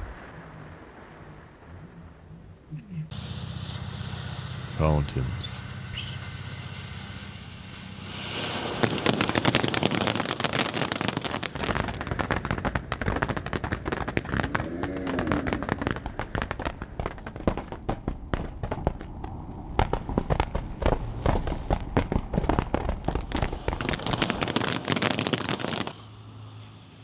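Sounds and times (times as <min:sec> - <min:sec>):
fireworks hissing: 0:03.1 - 0:12.6, 0:23.1 - 0:27.0
fireworks crackling: 0:03.1 - 0:27.0.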